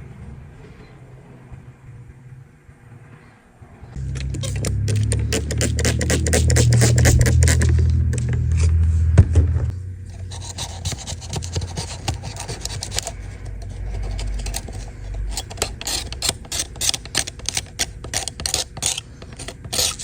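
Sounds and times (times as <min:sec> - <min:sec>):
low hum: 0:00.0 - 0:20.0
scrubbing strokes on a case: 0:04.1 - 0:08.4, 0:10.1 - 0:20.0.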